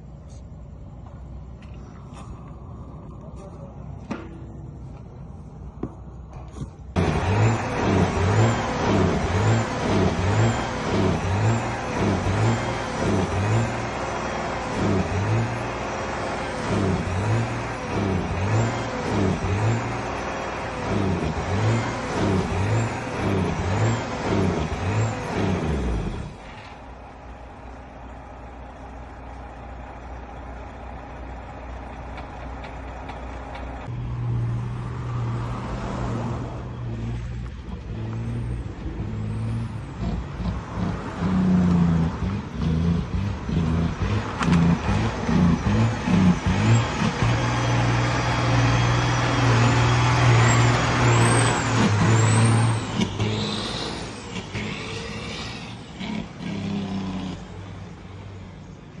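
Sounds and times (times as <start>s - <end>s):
truck engine misfiring: 6.9s - 33.9s, 37.5s - 57.6s.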